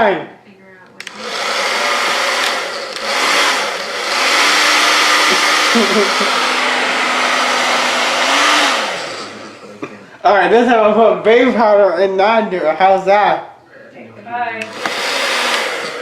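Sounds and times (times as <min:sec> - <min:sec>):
hair dryer blowing air: 0:01.0 - 0:09.8, 0:14.5 - 0:16.0.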